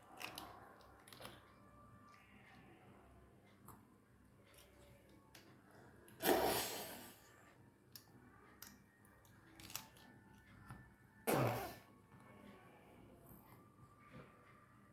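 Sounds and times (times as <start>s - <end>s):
person coughing: 11.3s - 11.9s.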